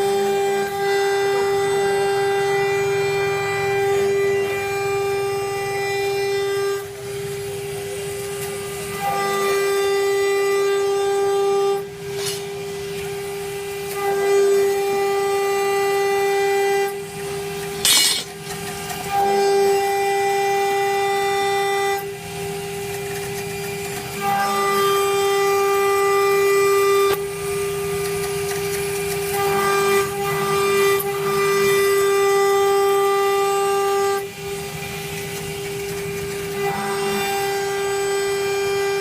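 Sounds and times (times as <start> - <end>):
router spindle milling metal: 14.7 - 39.0.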